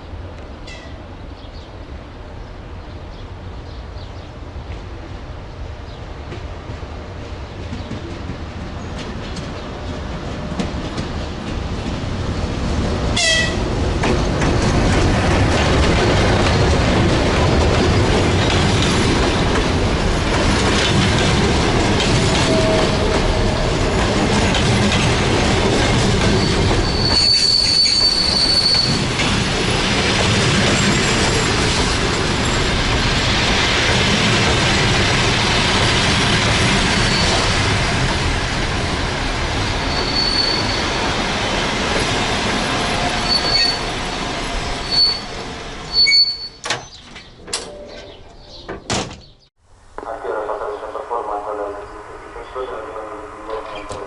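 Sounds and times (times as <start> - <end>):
train wheels rumbling on rails: 0.0 - 49.4
high squeal of train: 0.6 - 4.4, 12.2 - 38.5, 39.2 - 47.0, 51.6 - 54.0.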